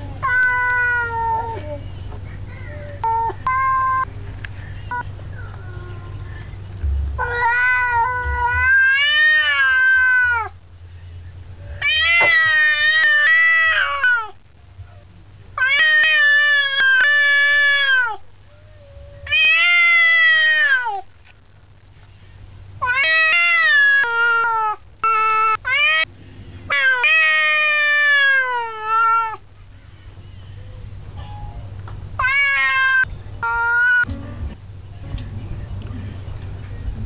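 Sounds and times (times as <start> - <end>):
cat yowling: 0.0 - 1.8, 2.6 - 4.1, 7.2 - 10.6, 11.8 - 14.4, 15.6 - 21.1, 22.8 - 26.1, 26.7 - 29.4, 32.2 - 34.1.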